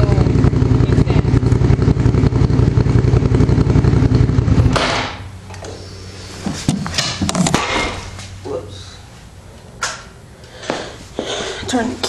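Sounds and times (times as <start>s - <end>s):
motorcycle engine running: 0.0s - 6.3s.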